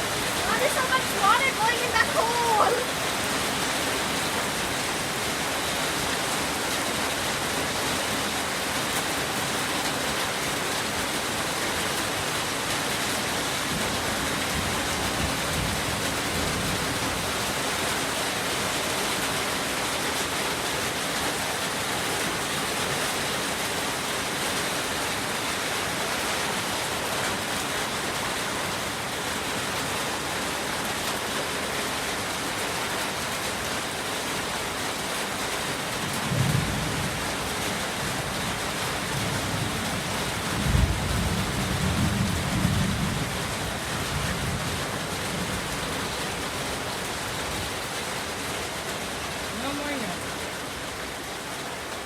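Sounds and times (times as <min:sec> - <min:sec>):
running water: 0:00.0 - 0:36.3
heavy rain falling: 0:00.0 - 0:52.0.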